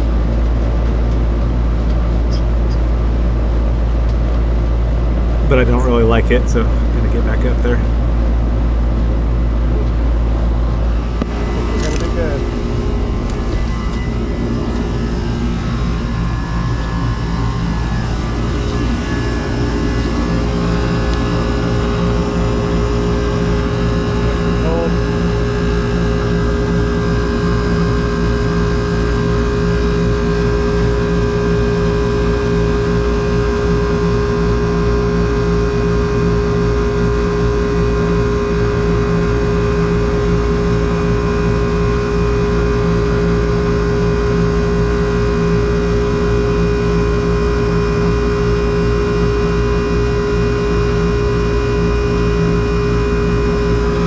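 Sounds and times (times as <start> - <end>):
air conditioner humming: 5.2 - 9.4.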